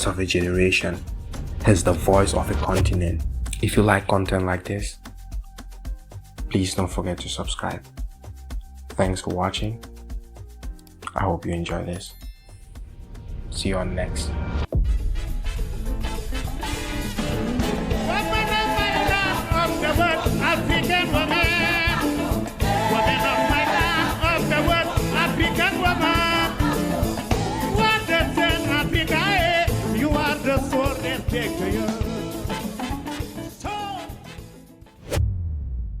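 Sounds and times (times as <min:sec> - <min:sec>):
song with vocals over a beat: 0:17.9 - 0:32.8.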